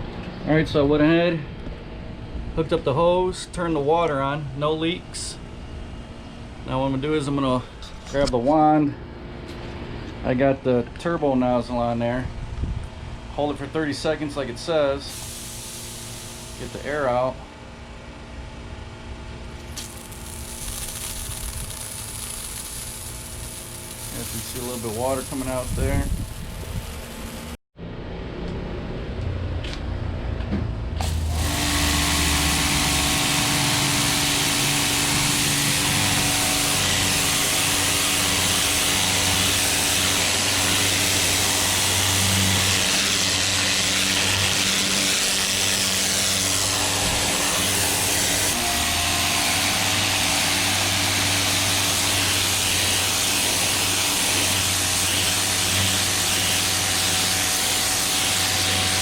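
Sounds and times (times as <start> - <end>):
pressure washer motor hum: 13.6 - 17.7, 19.5 - 27.6, 31.0 - 59.0
high-pressure water spraying: 15.1 - 17.1, 19.7 - 27.6, 31.0 - 59.0.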